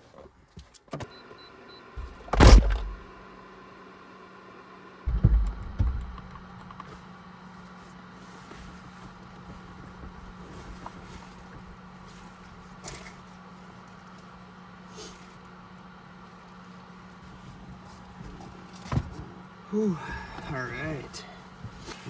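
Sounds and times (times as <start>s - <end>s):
knocks and rustles in truck cab: 2.0s - 3.0s, 5.1s - 7.0s, 8.5s - 13.3s, 17.2s - 19.5s, 21.5s - 22.0s
heavy thumps: 2.0s - 3.1s, 5.1s - 6.8s
steady low hum: 2.0s - 3.3s, 5.1s - 22.0s.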